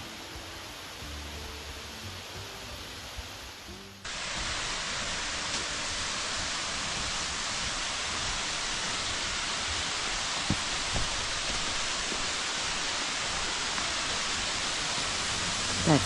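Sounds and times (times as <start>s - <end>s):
waterfall pouring: 4.0s - 16.0s.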